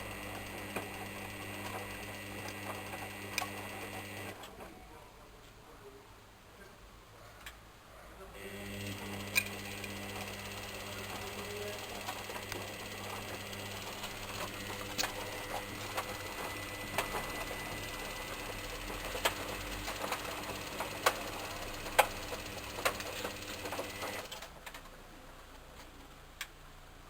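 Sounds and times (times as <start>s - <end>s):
washing machine drum humming: 0.0s - 4.4s, 8.7s - 24.4s.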